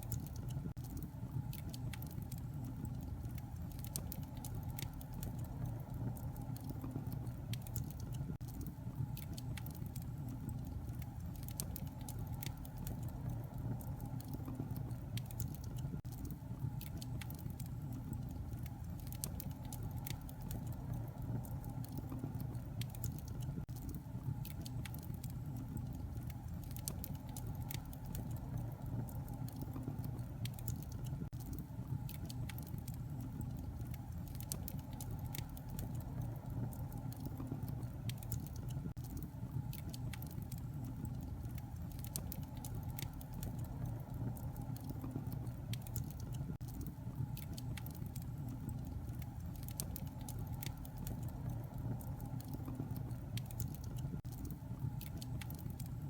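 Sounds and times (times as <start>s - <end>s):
low fire rumble: 0.0s - 56.0s
wood fire crackling: 0.0s - 56.0s.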